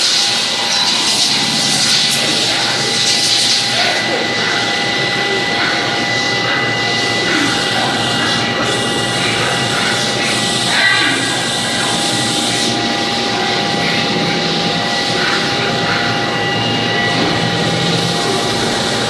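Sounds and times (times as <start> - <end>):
machine drone: 0.0 - 19.0
steady machine whining tones: 0.0 - 19.0.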